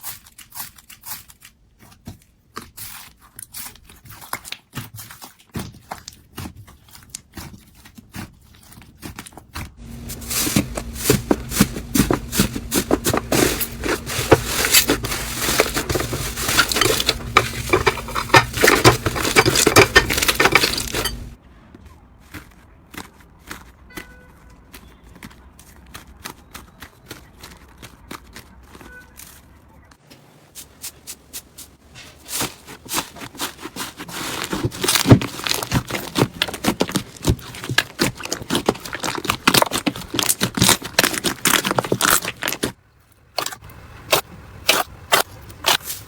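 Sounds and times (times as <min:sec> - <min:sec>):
low steady hum: 0:09.8 - 0:21.4
slime crackling and popping: 0:33.7 - 0:42.8.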